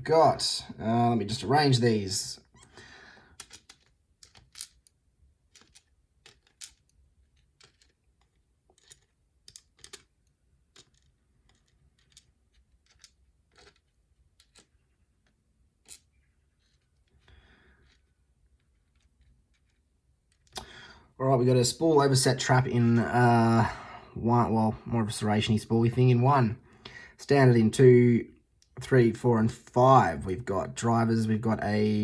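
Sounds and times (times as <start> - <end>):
small metal pins clicking: 3.4 - 20.6.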